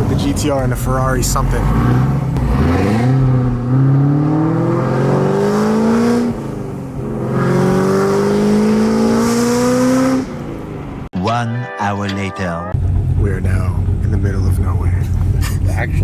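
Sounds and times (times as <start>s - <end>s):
car engine accelerating hard: 0.0s - 11.1s.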